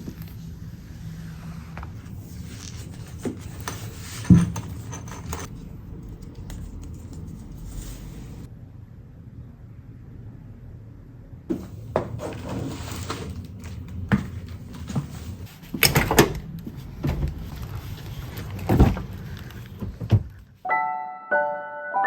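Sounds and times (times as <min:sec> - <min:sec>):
knocks and thunks of objects: 0:18.5 - 0:19.2, 0:19.8 - 0:20.4
soft piano music: 0:20.6 - 0:22.0.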